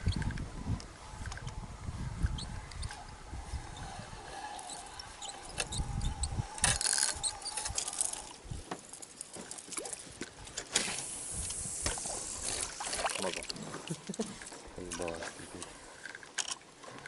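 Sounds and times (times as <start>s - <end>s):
fishing reel clicking: 3.8s - 9.3s.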